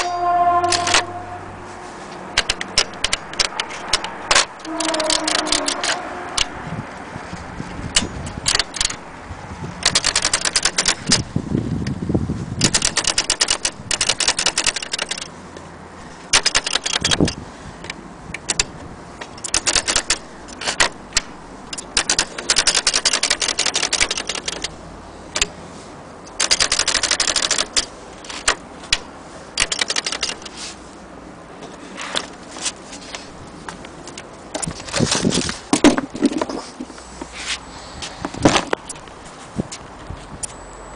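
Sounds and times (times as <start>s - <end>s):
typewriter key strikes: 0.7s - 1.1s, 9.8s - 11.2s, 12.6s - 15.3s, 16.3s - 17.4s, 19.4s - 24.7s, 29.6s - 30.5s.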